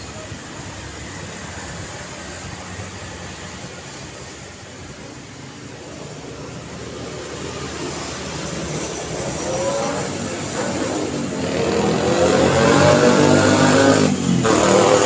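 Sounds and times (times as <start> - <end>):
road traffic noise: 0.0 - 15.0
vehicle engine approaching: 5.8 - 15.0.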